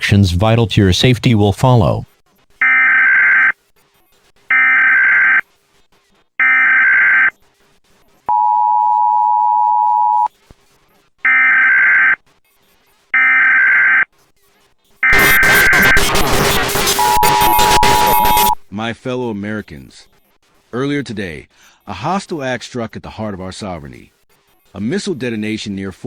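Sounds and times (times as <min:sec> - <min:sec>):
two-tone attention signal: 0:08.3 - 0:10.3, 0:16.8 - 0:18.6
digital data bursts: 0:15.0 - 0:18.6.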